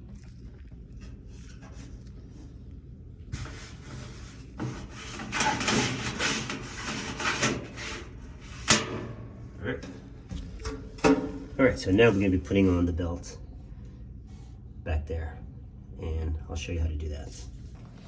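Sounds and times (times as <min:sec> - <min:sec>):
dryer drum rubbing and scraping: 0:03.3 - 0:09.2.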